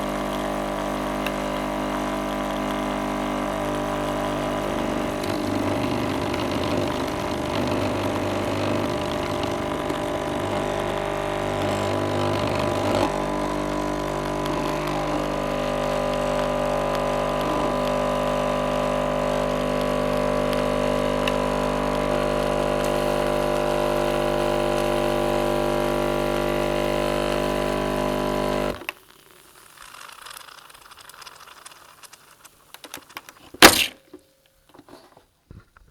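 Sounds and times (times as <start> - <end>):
coffee machine pump humming: 0.0 - 28.9
faint small rattles: 29.7 - 33.6.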